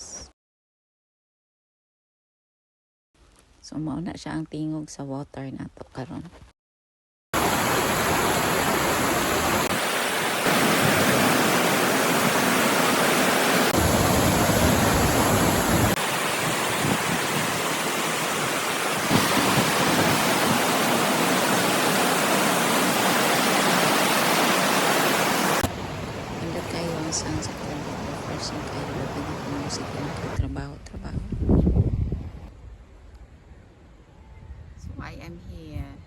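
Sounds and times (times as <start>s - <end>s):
waterfall rushing: 7.4s - 30.4s.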